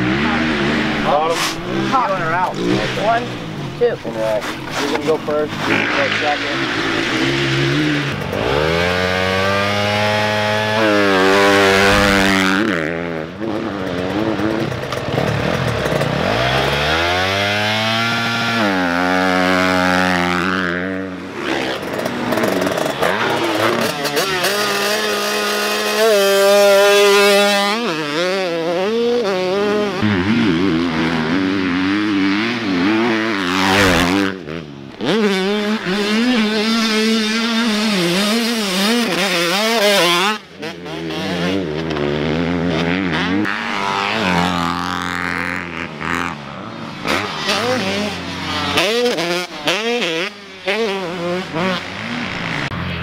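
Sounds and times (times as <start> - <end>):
dirt bike engines revving: 0.0 - 53.0.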